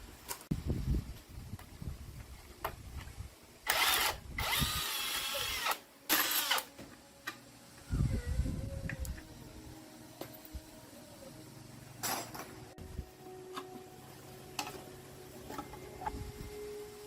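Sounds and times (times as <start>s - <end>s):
power drill motor whine: 3.7s - 6.7s.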